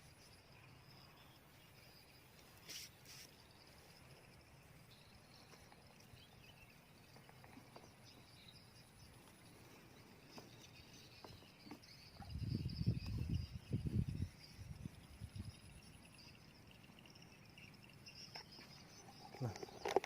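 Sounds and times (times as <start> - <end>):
insects chirping: 0.0 - 20.0.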